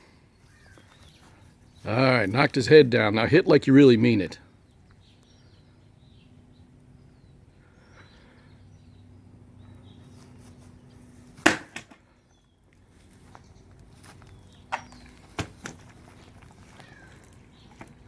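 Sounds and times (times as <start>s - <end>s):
low steady hum: 0.0s - 18.0s
faint bird chirps: 0.3s - 1.9s.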